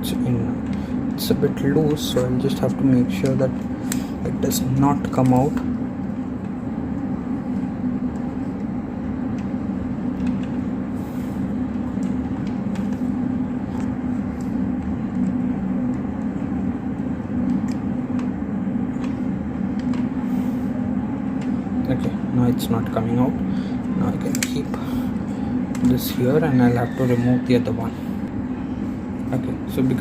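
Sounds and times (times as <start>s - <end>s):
steady mechanical hum: 0.0s - 30.0s.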